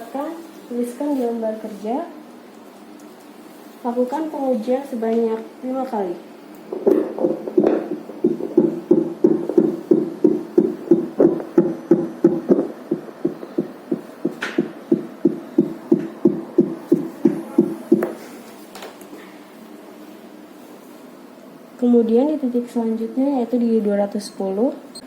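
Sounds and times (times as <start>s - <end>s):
whooshing heartbeat pulses: 6.7s - 18.2s.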